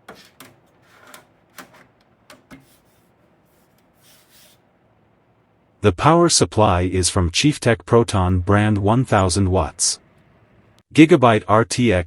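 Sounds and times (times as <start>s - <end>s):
computer hardware clicks and knocks: 0.0s - 2.7s.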